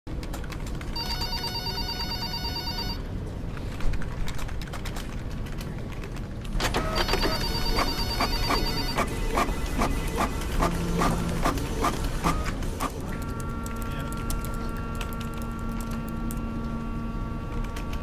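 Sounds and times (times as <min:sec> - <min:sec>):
telephone ringing: 0:01.0 - 0:03.0, 0:06.8 - 0:09.0.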